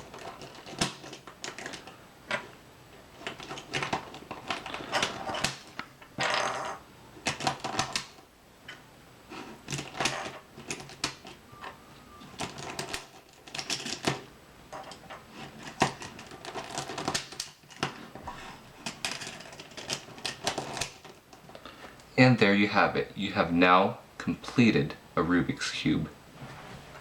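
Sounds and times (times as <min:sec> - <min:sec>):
plastic cube pieces clicking: 0:00.0 - 0:02.0, 0:07.2 - 0:08.2, 0:12.3 - 0:14.3, 0:15.6 - 0:18.1, 0:18.8 - 0:21.2.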